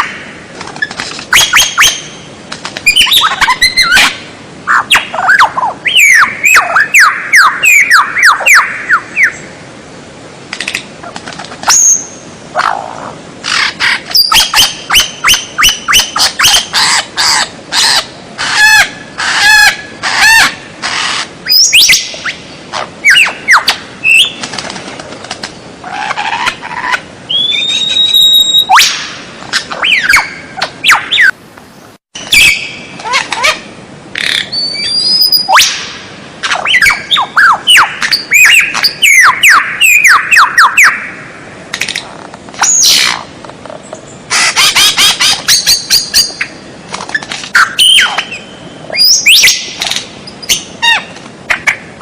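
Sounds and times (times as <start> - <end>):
songbird singing whistles and chatter: 2.9 - 4.1, 27.3 - 29.0, 34.2 - 35.8, 47.6 - 49.7.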